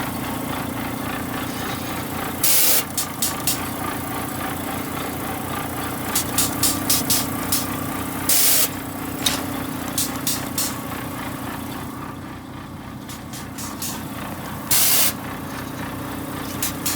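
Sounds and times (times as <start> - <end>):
machine engine running: 0.0 - 16.9
short hissing bursts: 2.4 - 3.8, 6.2 - 8.8, 10.0 - 10.9, 13.1 - 14.1, 14.7 - 15.2, 16.6 - 16.9
sharp ticks: 2.9 - 3.7.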